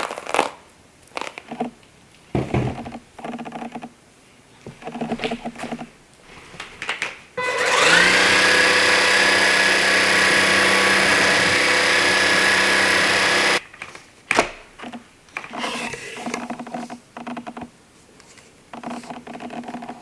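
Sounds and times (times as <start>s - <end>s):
vacuum motor whine: 7.4s - 13.6s.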